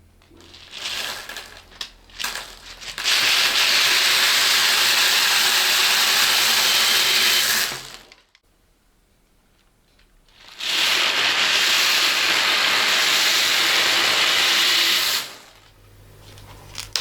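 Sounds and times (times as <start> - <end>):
beads rattling out of bottle: 0.2 - 8.1.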